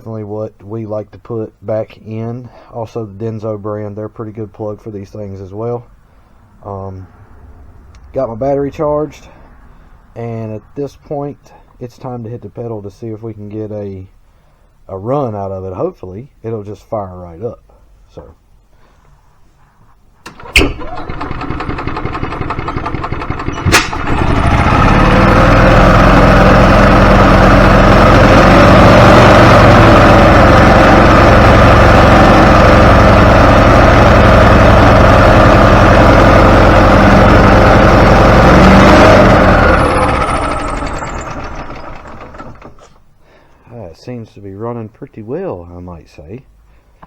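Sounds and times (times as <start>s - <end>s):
golf cart engine cranking and running: 20.2s - 43.1s.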